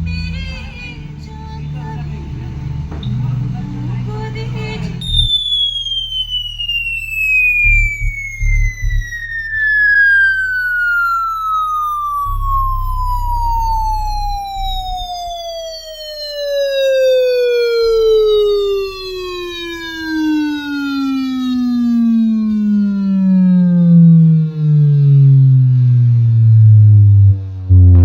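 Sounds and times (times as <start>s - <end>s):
heavy bass thumps: 2.6s - 3.6s, 5.0s - 10.7s, 12.0s - 15.5s, 27.6s - 28.0s
electronic tone sliding downward: 5.0s - 28.0s.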